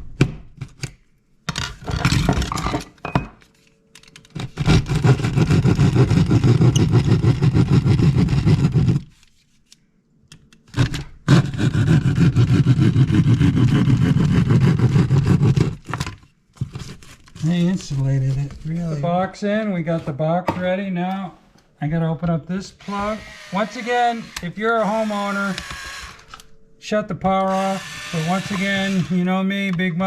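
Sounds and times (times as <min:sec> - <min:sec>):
cordless drill running: 0:22.8 - 0:26.4, 0:27.4 - 0:29.3.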